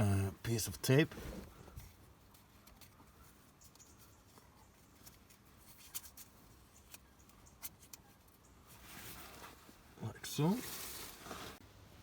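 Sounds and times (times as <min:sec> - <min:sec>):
tape clicks and rustles: 0:01.7 - 0:08.5.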